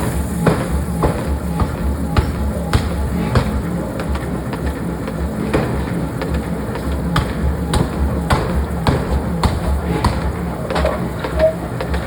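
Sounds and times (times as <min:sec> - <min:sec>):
low machine rumble: 0:00.0 - 0:12.0.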